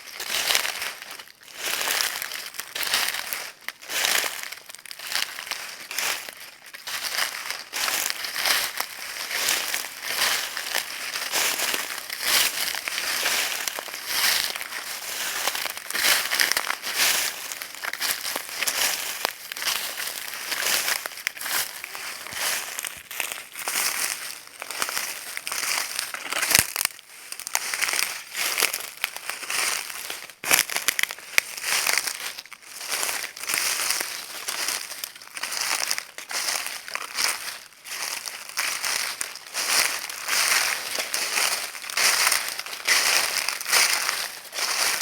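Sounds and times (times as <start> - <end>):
footsteps crunching dry leaves: 0.0 - 45.0.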